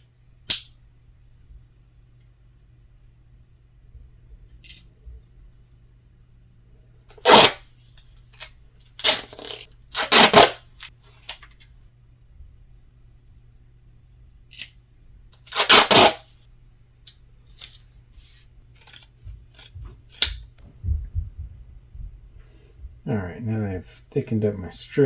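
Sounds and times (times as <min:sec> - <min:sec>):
duct tape rasping off roll: 0:07.1 - 0:07.6, 0:08.4 - 0:11.3, 0:15.4 - 0:16.2.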